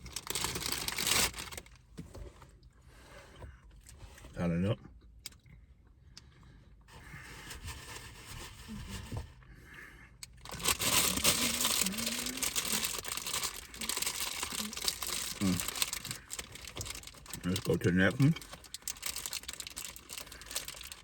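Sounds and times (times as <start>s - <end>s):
plastic bag crinkling: 0.0s - 1.8s, 10.4s - 21.0s.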